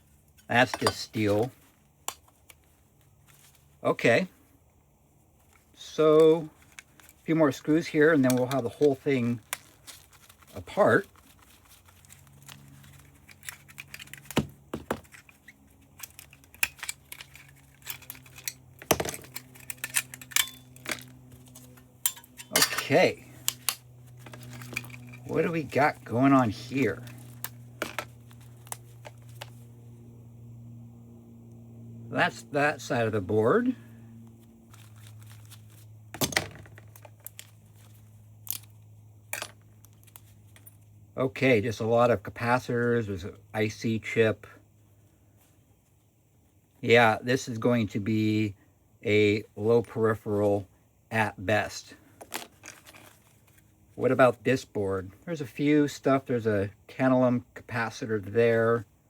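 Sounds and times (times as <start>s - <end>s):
steady low hum: 0.0s - 55.5s
metal parts clinking: 6.6s - 29.5s, 36.2s - 40.9s.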